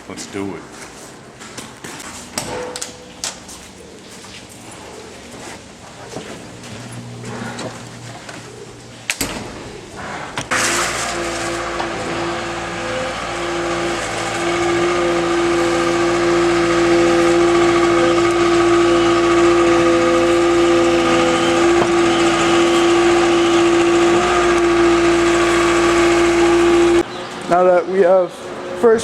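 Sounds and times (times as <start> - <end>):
farm machine engine whining: 6.2 - 29.0
manure being scraped: 10.5 - 27.0.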